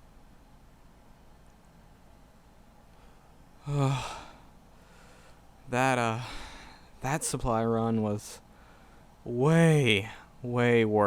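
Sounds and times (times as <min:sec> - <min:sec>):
faint microphone hiss: 0:00.0 - 0:11.0.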